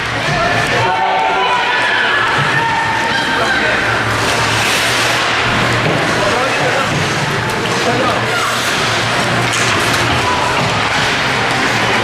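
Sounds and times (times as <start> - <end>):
crowd noise in arena: 0.0 - 12.0
music playing: 3.4 - 12.0.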